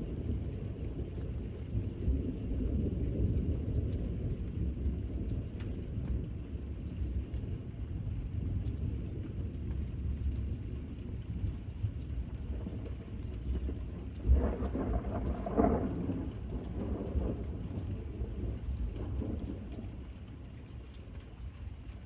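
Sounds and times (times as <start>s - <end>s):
distant thunder rumbling: 0.0s - 21.9s
steady rain: 0.0s - 22.0s
thunderclap: 11.3s - 20.2s.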